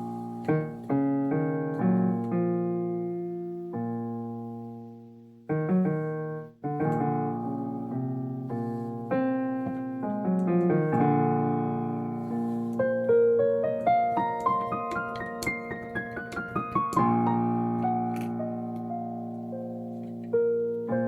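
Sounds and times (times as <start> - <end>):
piano chords and notes: 0.0 - 21.0.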